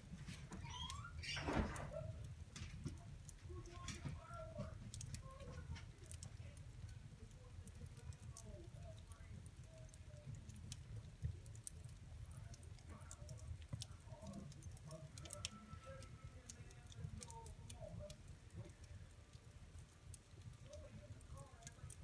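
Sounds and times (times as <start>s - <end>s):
fire pops and snaps: 0.0s - 15.6s
wood fire crackling: 0.0s - 22.0s.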